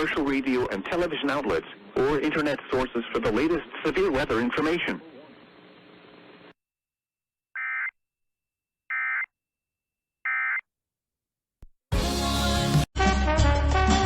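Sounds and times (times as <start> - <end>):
loud music: 11.9 - 14.0.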